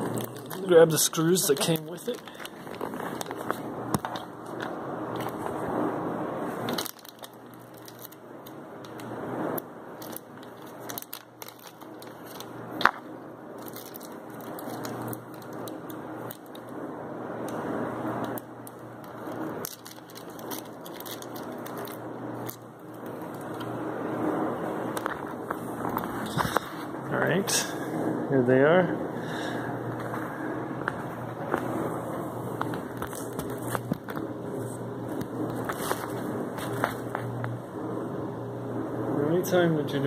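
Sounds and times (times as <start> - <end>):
packaging rustling and crinkling: 0.0 - 5.6, 6.5 - 9.1, 10.0 - 16.8, 18.2 - 23.8, 32.6 - 37.4.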